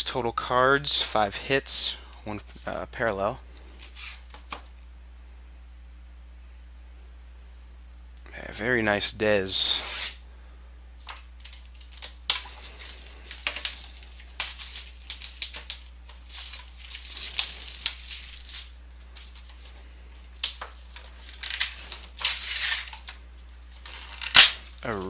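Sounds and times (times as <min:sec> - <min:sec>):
cardboard crinkling and ripping: 0:11.1 - 0:25.0.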